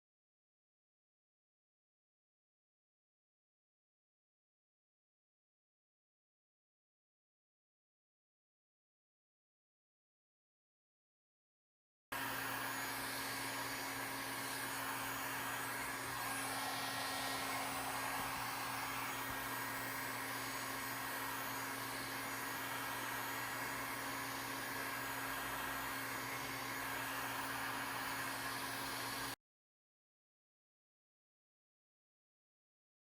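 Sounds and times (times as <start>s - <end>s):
steady hiss: 15.7s - 21.1s
low hum: 15.8s - 21.0s.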